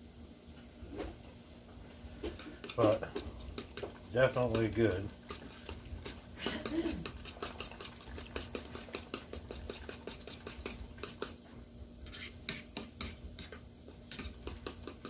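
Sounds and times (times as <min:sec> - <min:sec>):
faint steady hum: 0:00.0 - 0:15.0
utensil clicking against a dish: 0:02.4 - 0:11.4, 0:12.5 - 0:15.0.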